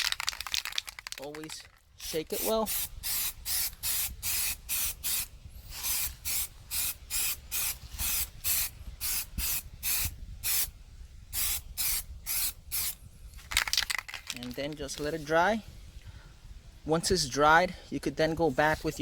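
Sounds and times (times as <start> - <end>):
aerosol spray can hissing: 2.0 - 10.7, 11.4 - 13.0.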